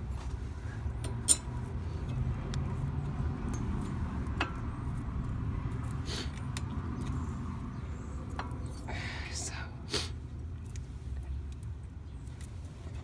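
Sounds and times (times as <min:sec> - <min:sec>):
metallic clicks of brake parts: 0:00.2 - 0:09.4.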